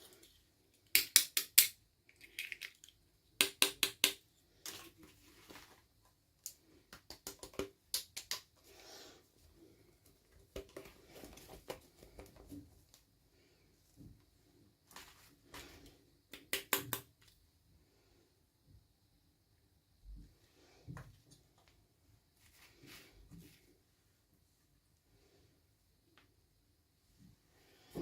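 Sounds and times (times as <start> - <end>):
sharp clicks of toy pieces: 0.9 - 4.2.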